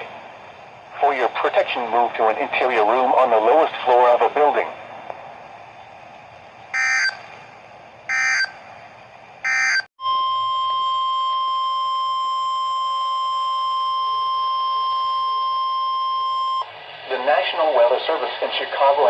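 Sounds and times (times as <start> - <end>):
steady alarm tone: 6.8 - 7.3, 8.1 - 8.6, 9.4 - 16.6.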